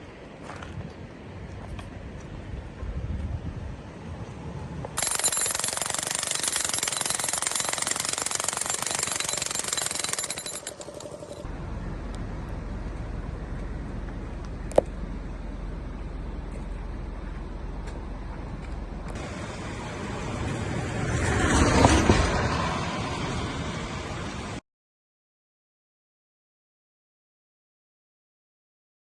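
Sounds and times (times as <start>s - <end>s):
jackhammer hammering: 5.0s - 11.5s
low steady rumble: 11.4s - 20.6s.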